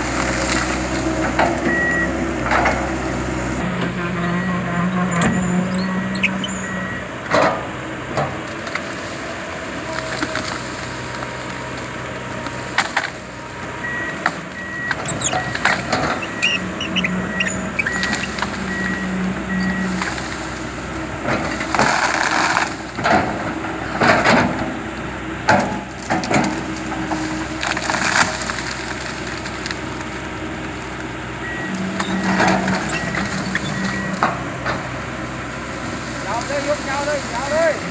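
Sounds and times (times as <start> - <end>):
excavator diesel engine: 0.0 - 37.9
beeping alarm: 1.7 - 2.2, 4.0 - 7.2, 13.8 - 20.0, 31.4 - 34.7
wood cracking and splintering: 8.2 - 24.7, 25.5 - 31.1.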